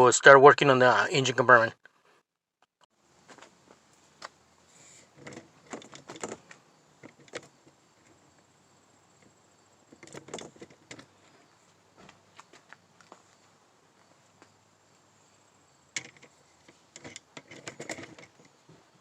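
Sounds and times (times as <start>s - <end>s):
handling clicks and knocks: 5.1s - 8.5s, 9.2s - 13.2s, 15.9s - 18.9s.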